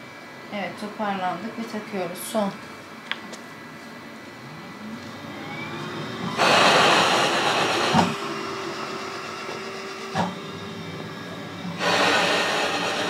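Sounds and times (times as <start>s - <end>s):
machine steady hum: 0.0s - 13.0s
cough assist machine air rush: 6.4s - 8.2s, 11.8s - 13.0s.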